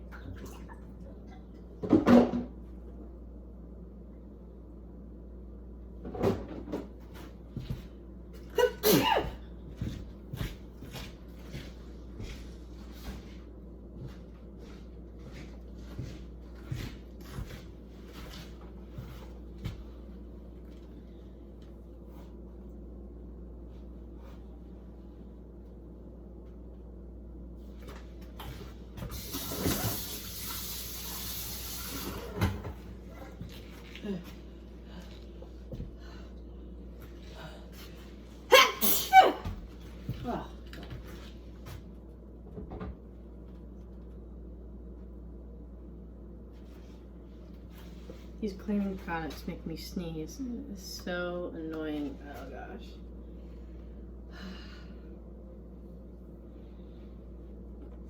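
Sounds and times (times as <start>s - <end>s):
person sneezing: 8.5s - 9.4s, 38.5s - 39.6s
water running from tap: 29.2s - 32.5s.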